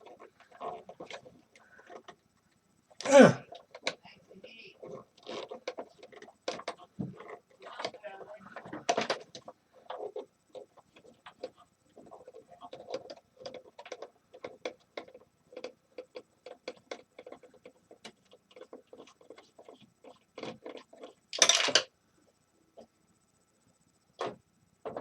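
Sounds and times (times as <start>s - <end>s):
parts clattering: 16.5s - 21.9s.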